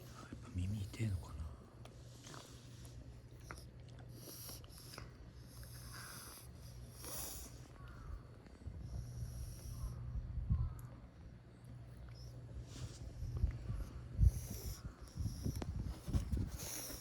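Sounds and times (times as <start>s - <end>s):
cat snorting: 4.1s - 7.6s, 16.4s - 17.0s.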